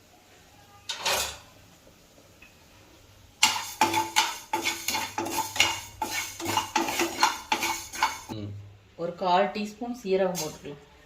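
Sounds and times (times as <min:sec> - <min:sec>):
metal spatula scraping a pan: 0:03.4 - 0:08.3.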